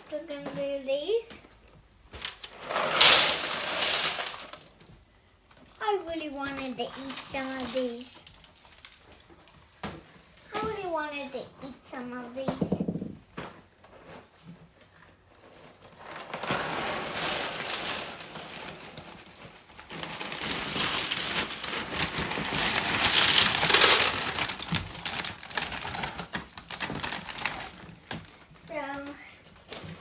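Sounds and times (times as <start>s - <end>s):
cereal pieces poured into pan: 2.4s - 4.8s, 7.0s - 8.5s, 16.0s - 25.4s.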